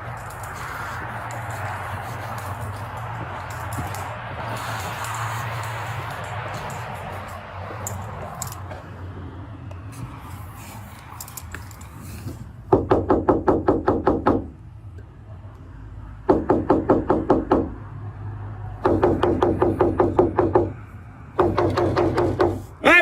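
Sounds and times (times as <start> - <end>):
rapid knocking on a door: 12.7 - 14.5, 16.3 - 17.7, 18.8 - 20.8, 21.4 - 22.6.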